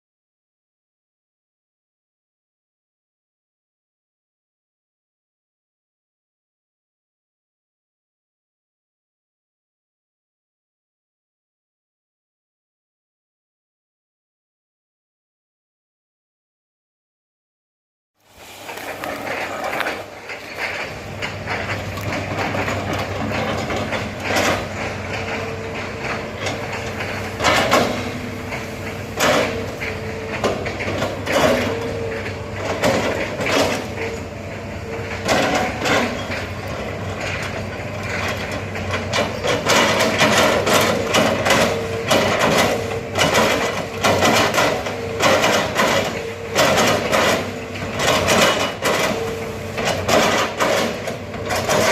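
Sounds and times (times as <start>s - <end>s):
excavator diesel engine running: 18.2s - 51.9s
metallic clanks and knocks: 18.8s - 51.9s.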